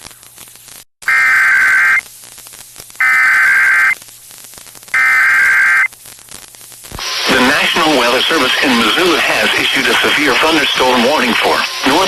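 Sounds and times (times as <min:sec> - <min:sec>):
faint radio hiss: 0:00.0 - 0:12.0
buzzing warble data tones: 0:01.0 - 0:02.0, 0:03.0 - 0:04.0, 0:04.9 - 0:06.0.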